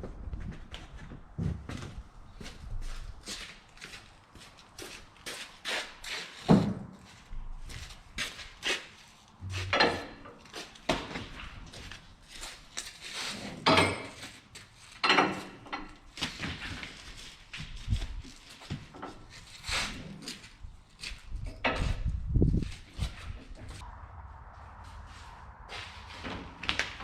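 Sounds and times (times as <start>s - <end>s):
footsteps: 0.0s - 13.5s, 16.2s - 27.0s
metal gear clanking and scraping: 9.4s - 10.4s.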